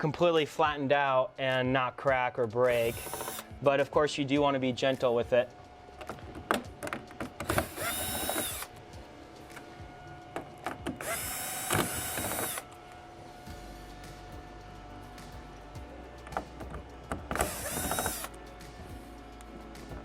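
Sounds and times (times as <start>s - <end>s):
power screwdriver motor whine: 2.7s - 3.5s, 7.4s - 8.8s, 10.9s - 12.9s, 17.2s - 18.4s.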